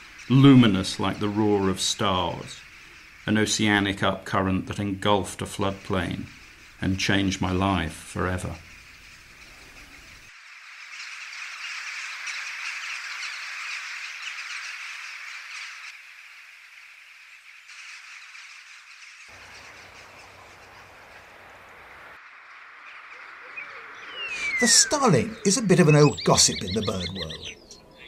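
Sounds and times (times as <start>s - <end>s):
flock of crows cawing: 18.9s - 28.0s.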